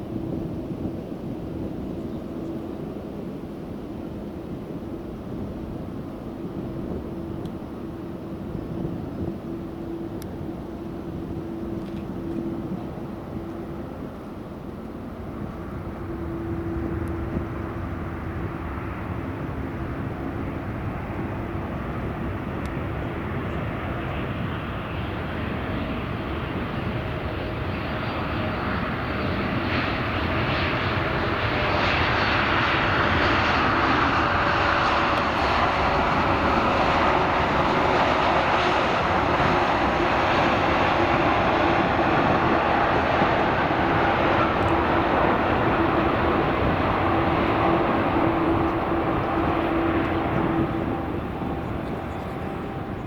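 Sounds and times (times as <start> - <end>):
jet engines roaring: 0.0 - 53.0.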